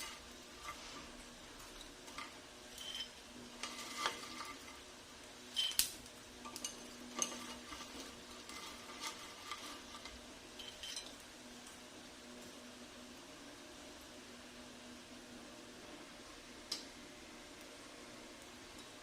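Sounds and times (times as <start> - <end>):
low steady hum: 0.0 - 19.0
metal utensil scraping a pan: 2.1 - 4.9, 6.5 - 11.1.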